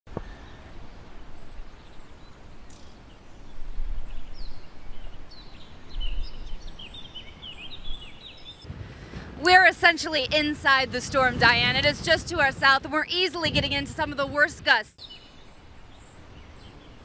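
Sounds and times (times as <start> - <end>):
small birds chirping: 0.1 - 8.7, 14.9 - 17.0.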